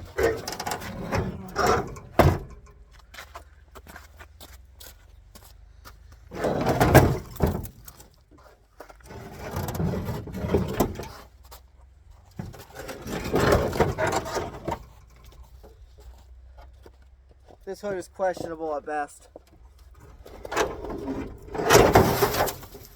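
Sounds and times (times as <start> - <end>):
sheet metal scraping and rattling: 0.0 - 2.9, 6.3 - 7.9, 9.1 - 11.2, 12.4 - 15.7, 20.0 - 22.9.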